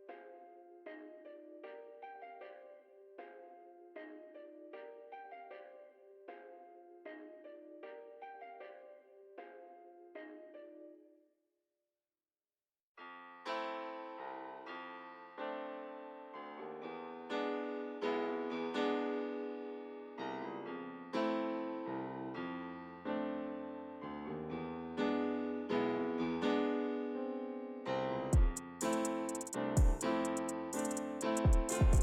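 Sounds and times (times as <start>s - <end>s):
slow piano chords: 13.0s - 32.0s.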